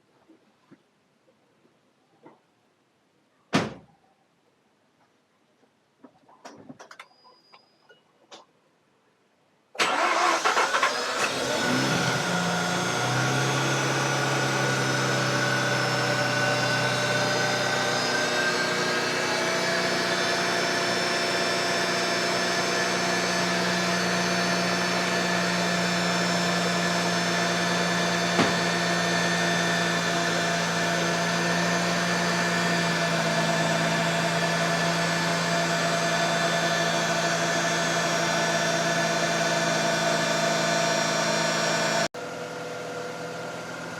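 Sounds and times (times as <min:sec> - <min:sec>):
rotary engine starting and idling: 0:09.8 - 0:42.1.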